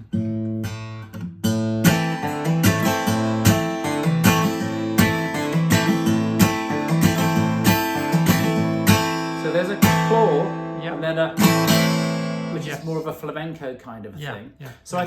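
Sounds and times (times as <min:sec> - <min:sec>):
acoustic guitar fingerpicking: 0:00.0 - 0:13.2.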